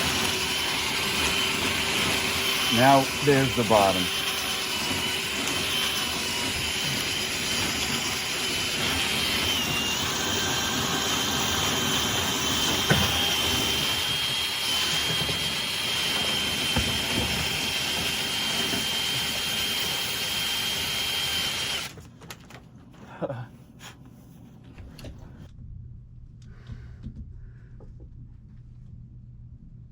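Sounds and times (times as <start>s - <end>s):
power drill whining: 0.0s - 22.0s.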